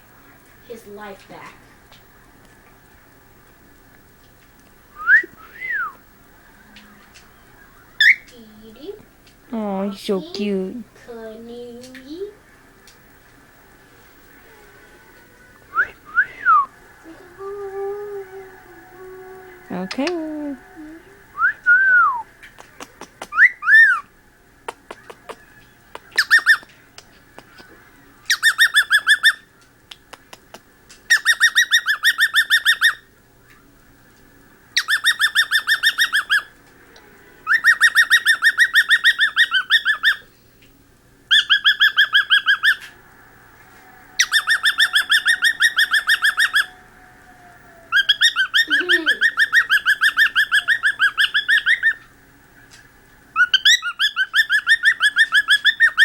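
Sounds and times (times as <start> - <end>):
cockatiel chirping: 26.1 - 26.6, 28.3 - 29.4, 31.1 - 33.0, 34.8 - 36.5, 37.5 - 40.3, 41.3 - 42.9, 44.2 - 46.8, 47.9 - 52.1, 53.4 - 56.0.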